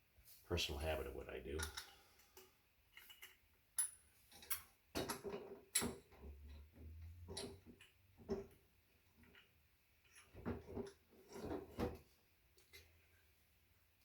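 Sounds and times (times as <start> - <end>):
metal parts clicking and knocking: 2.9 - 6.2.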